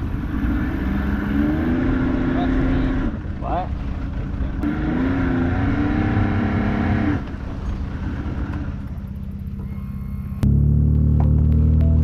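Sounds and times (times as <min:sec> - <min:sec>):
outboard motor running: 0:07.2 - 0:12.0.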